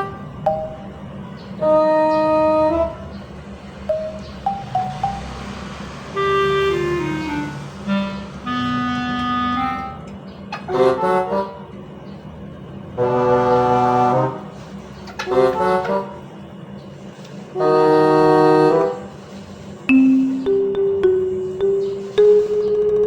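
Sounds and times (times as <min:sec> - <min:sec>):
brass-like background music: 0:13.0 - 0:14.6, 0:15.3 - 0:16.2, 0:17.6 - 0:19.1.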